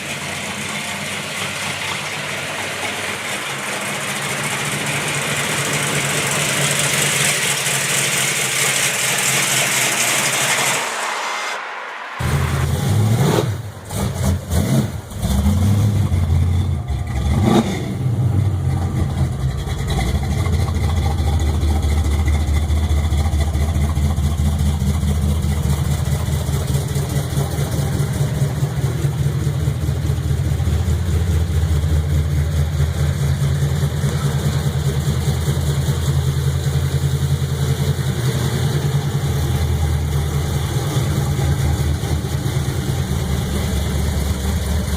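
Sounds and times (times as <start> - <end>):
car engine idling: 0.0 - 44.9
engine revving blip: 9.2 - 15.3.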